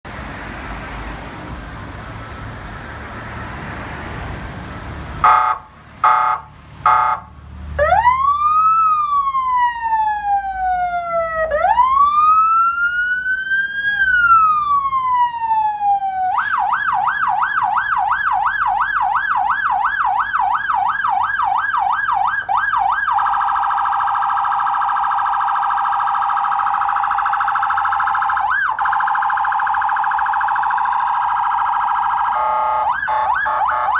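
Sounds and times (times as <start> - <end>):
short horn blasts: 5.2 - 7.3, 32.3 - 33.9
electronic vehicle siren: 5.2 - 33.9.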